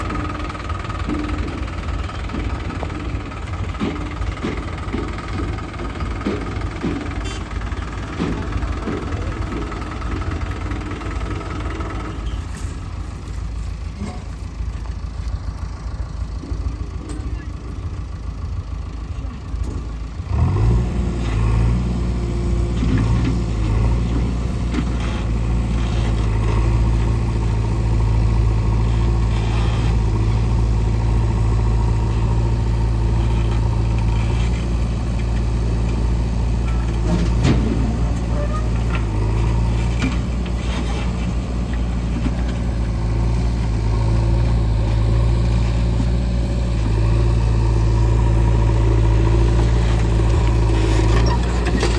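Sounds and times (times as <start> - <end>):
diesel engine idling: 0.0 - 51.9.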